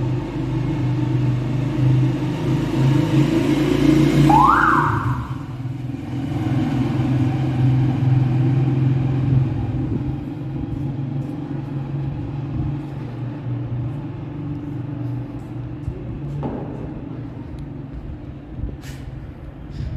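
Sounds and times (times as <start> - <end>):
rising whine: 4.3 - 5.7.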